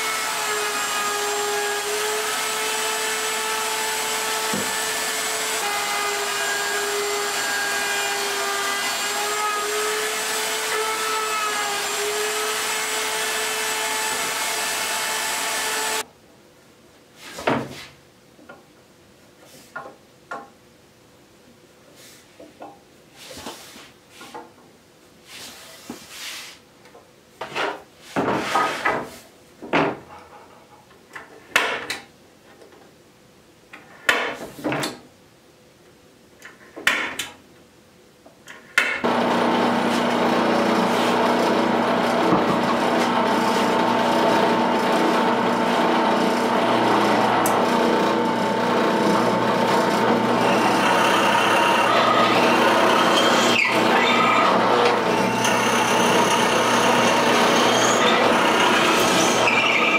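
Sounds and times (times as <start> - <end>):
woodworking power tool running: 0.0 - 16.0, 39.0 - 59.9.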